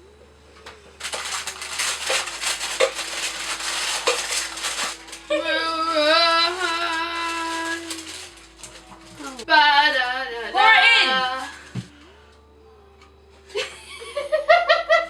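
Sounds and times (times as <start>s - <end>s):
crunching scraping kitchen work: 1.0s - 9.5s
woman singing a wavering note: 5.3s - 8.1s, 9.2s - 13.3s.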